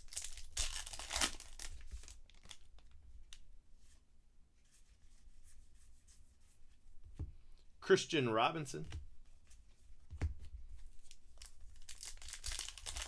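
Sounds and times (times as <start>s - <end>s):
foil wrapper tearing: 0.0s - 2.9s, 11.4s - 13.0s.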